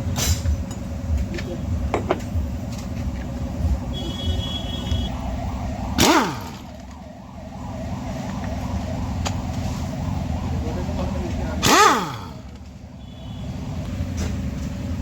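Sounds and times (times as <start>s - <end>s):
low rumble of passing vehicles: 0.0s - 15.0s
loud sound with falling pitch: 3.7s - 12.6s.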